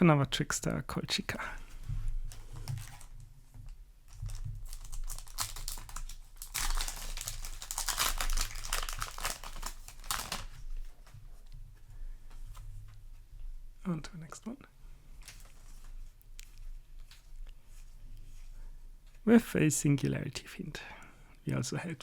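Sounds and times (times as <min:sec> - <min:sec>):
foil wrapper crinkling: 0:02.3 - 0:03.2, 0:04.1 - 0:10.9.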